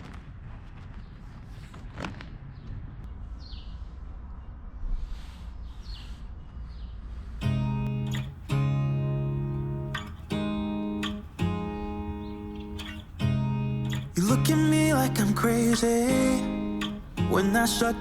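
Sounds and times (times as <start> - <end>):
bird chirping: 6.8 - 18.0.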